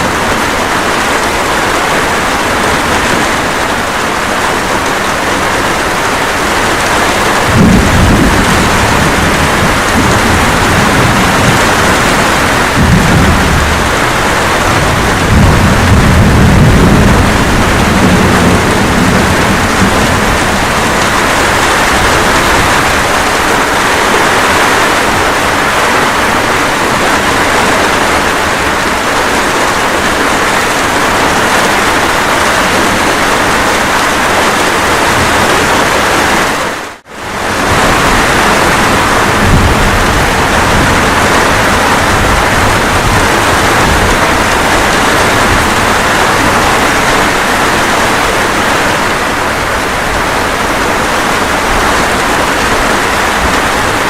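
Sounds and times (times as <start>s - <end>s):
steady rain falling: 0.0s - 54.0s
low rumble of thunder: 7.1s - 23.8s, 37.4s - 48.3s.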